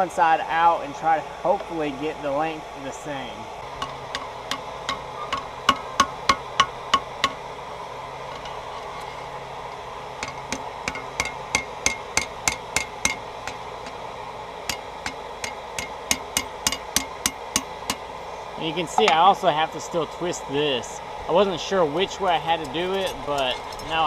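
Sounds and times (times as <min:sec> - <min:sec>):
steady rushing background noise: 0:00.0 - 0:24.0
hammer striking metal on anvil: 0:03.8 - 0:07.4, 0:10.2 - 0:14.0, 0:14.7 - 0:18.1.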